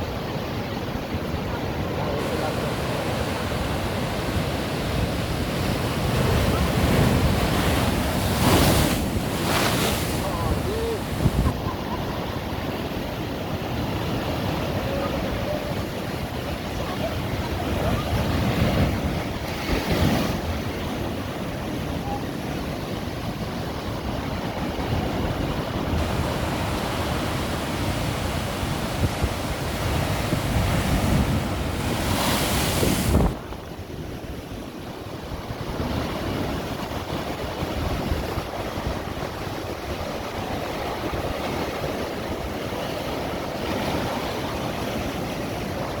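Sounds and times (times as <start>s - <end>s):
wind buffeting microphone: 0.0s - 34.7s
ocean surf washing: 0.0s - 46.0s.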